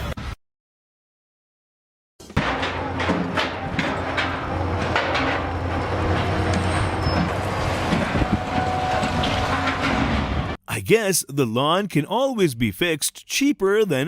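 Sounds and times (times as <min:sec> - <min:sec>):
knocks and rattles: 0:02.2 - 0:10.6
machine engine running: 0:02.4 - 0:10.6.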